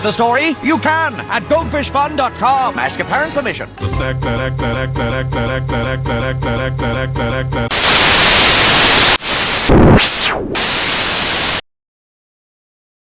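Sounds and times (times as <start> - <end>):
music jingle: 3.7 - 8.0
tv static hiss: 7.7 - 11.6.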